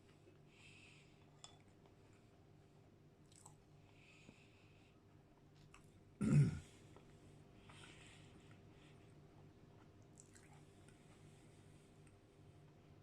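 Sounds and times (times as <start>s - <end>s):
mouth sounds of eating: 3.2s - 3.6s, 9.8s - 11.2s
person clearing throat: 6.2s - 6.7s.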